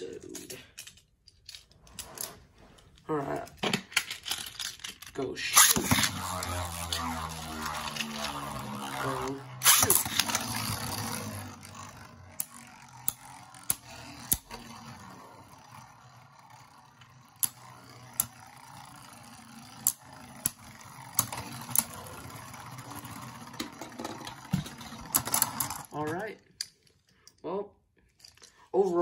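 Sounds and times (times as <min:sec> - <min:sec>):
spinning tops clacking: 0:03.6 - 0:26.1
spinning tops whirring: 0:03.7 - 0:26.2.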